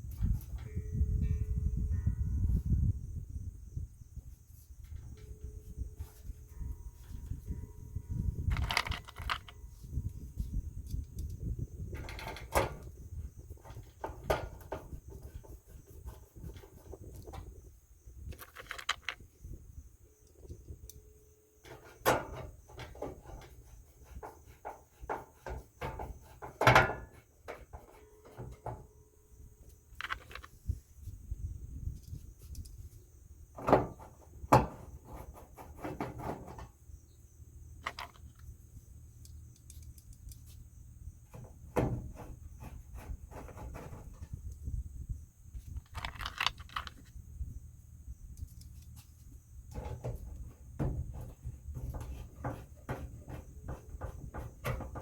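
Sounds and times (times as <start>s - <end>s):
hand tools clicking and rattling: 8.4s - 9.6s, 18.3s - 19.2s.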